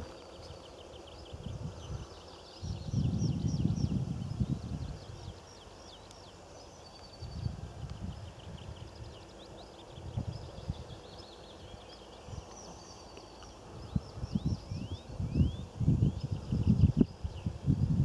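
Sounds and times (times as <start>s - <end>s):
small birds chirping: 0.0s - 17.8s.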